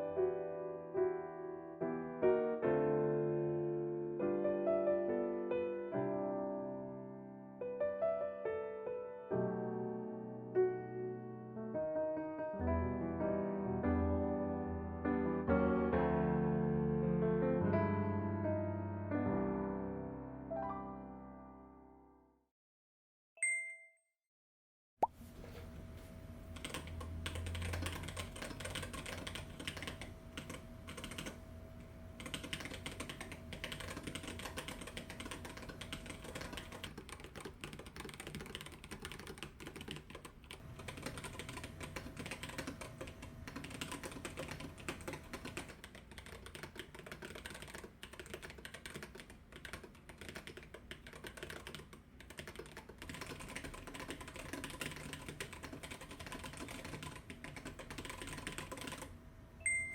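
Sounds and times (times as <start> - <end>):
mechanical keyboard typing: 26.6 - 31.4, 32.2 - 59.1.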